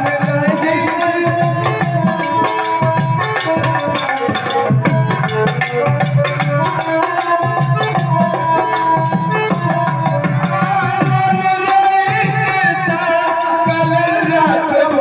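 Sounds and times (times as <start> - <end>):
hand drum rhythm: 0.0 - 15.0.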